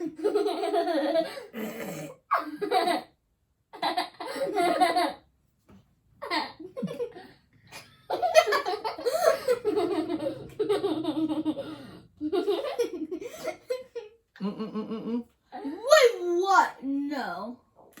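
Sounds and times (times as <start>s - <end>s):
people laughing and giggling: 6.2s - 15.3s.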